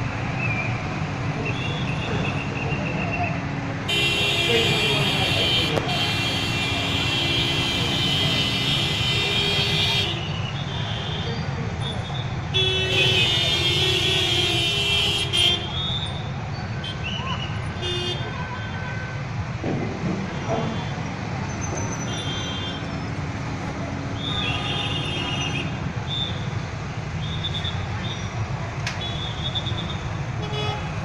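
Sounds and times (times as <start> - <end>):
vehicle horns tooting: 3.9 - 16.0, 17.8 - 19.2, 24.2 - 26.4.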